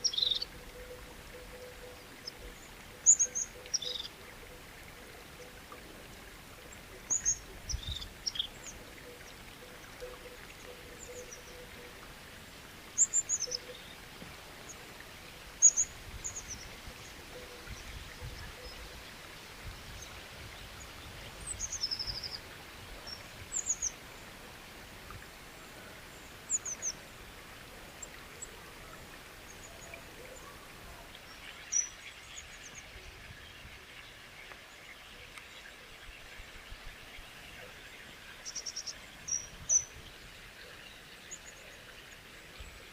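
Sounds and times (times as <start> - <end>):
birds chirping: 0.0 - 4.2
running water hiss: 0.0 - 42.9.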